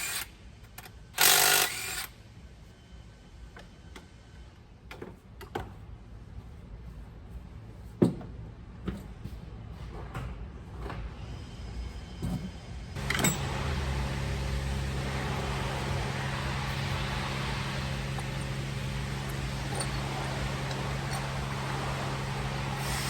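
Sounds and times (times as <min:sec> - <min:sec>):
machine humming and hissing: 0:11.2 - 0:23.0.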